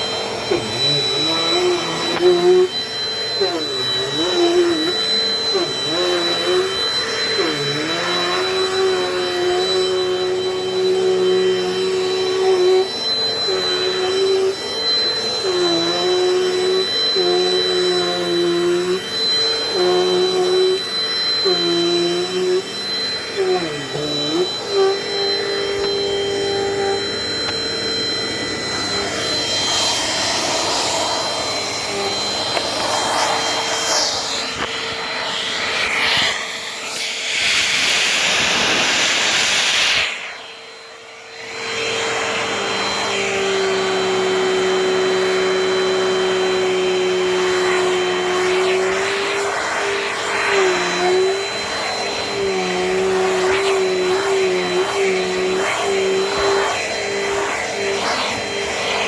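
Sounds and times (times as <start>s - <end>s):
handheld vacuum running: 0.0s - 59.0s.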